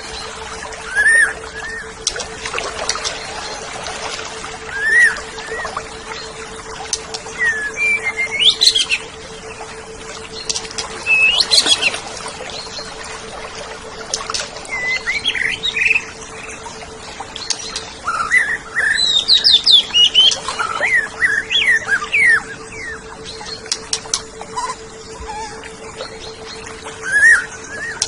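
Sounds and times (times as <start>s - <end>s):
bird singing whistled notes: 0.0s - 2.3s, 4.7s - 6.3s, 7.1s - 9.1s, 10.3s - 12.9s, 14.1s - 16.6s, 17.4s - 28.0s
faint steady hum: 0.0s - 28.0s.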